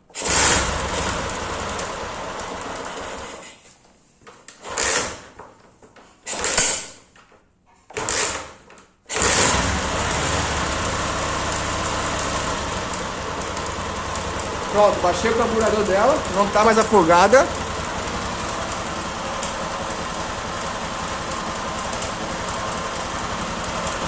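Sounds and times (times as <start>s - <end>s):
motorcycle engine restarting and running: 0.0s - 3.5s, 4.6s - 5.4s, 9.1s - 24.0s.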